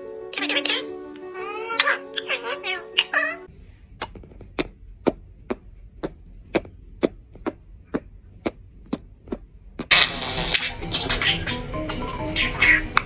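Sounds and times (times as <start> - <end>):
sharp taps: 4.0 - 10.0.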